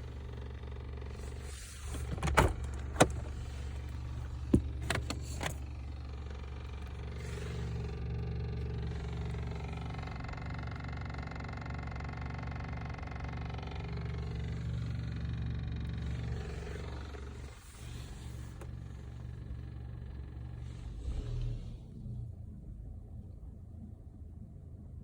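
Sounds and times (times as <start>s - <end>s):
car engine idling: 0.0s - 24.3s
sharp clicks and knocks: 2.0s - 5.6s.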